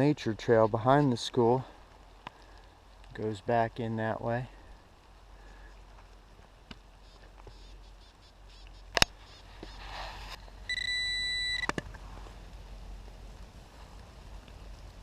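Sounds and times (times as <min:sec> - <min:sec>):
metal detector beep: 0:07.0 - 0:09.4, 0:10.7 - 0:11.7.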